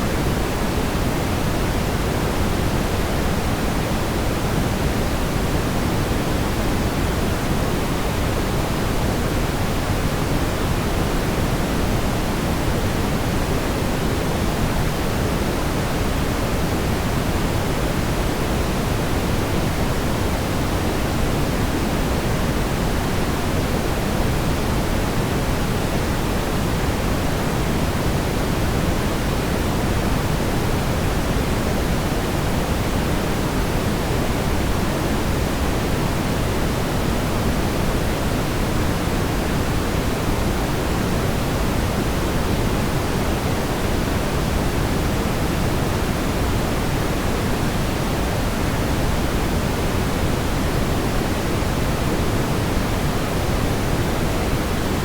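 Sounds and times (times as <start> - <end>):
brown noise rumbling hiss: 0.0 - 55.0.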